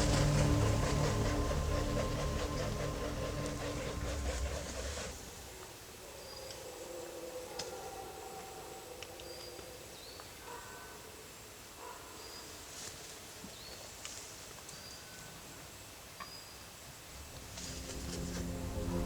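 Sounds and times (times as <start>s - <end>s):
music: 0.0s - 5.2s, 17.2s - 19.0s
forest ambience hiss: 0.0s - 19.0s.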